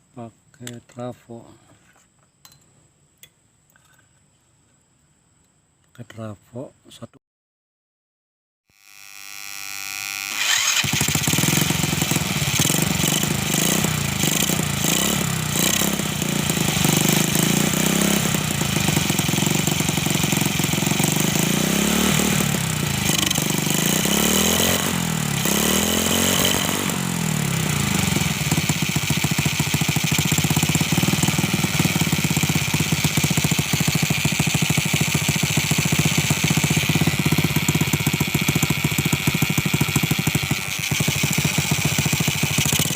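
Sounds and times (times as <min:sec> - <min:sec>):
small motorcycle engine revving: 0:08.7 - 0:42.9.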